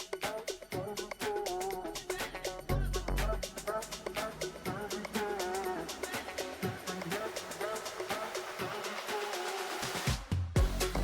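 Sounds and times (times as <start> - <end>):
deep bass drum beat: 10.1 - 11.0
background music with melody: 10.6 - 11.0.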